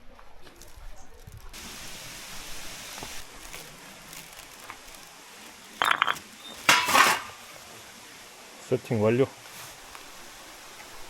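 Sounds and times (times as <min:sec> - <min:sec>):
cookware clinking and clanking: 0:05.8 - 0:07.5.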